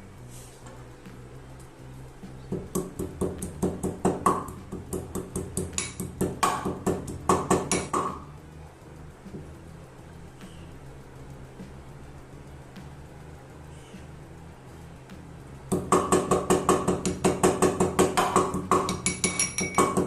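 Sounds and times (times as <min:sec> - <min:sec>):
low steady hum: 0:00.0 - 0:20.0
kitchen utensils knocking: 0:16.0 - 0:20.0.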